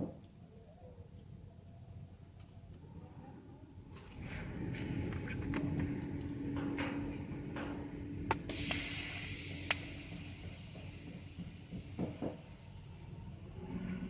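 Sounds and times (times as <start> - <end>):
welding torch hissing: 8.5 - 14.0.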